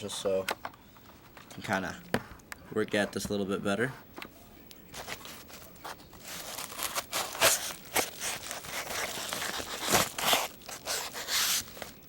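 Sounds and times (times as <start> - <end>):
knife cutting packaging: 5.0 - 12.0.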